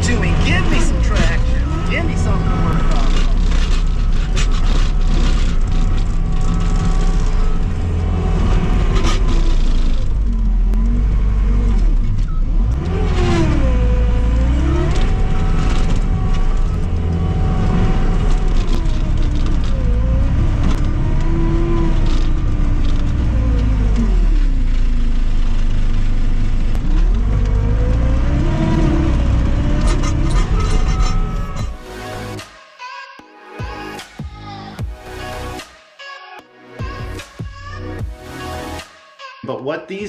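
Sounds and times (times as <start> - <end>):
diesel engine under load: 0.0 - 32.5.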